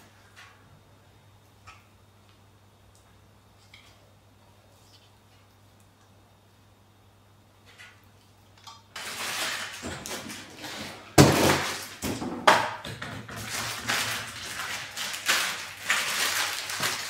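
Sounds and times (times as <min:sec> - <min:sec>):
packaging rustling: 0:09.0 - 0:12.0, 0:13.3 - 0:17.0.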